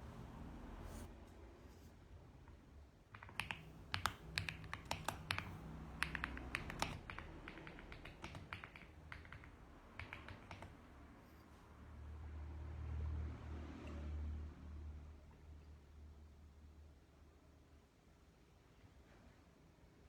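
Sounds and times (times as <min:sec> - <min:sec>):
mechanical keyboard key clicks: 0:03.1 - 0:10.7.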